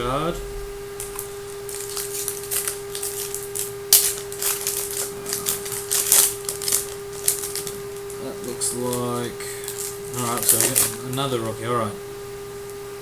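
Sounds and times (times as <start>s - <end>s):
steady low hum: 0.0s - 13.0s
wrapper crinkling: 0.9s - 11.4s
cards being handled: 8.8s - 11.2s.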